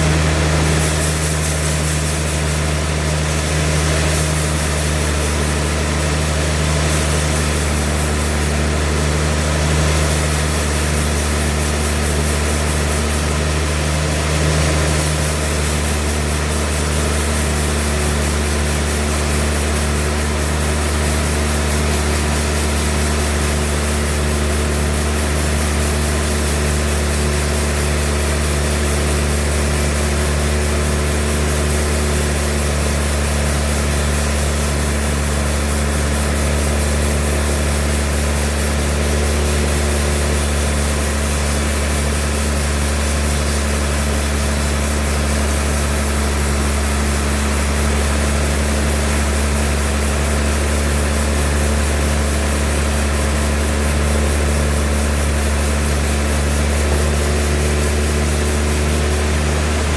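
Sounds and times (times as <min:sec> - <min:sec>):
deep engine drone: 0:00.0 - 0:59.9.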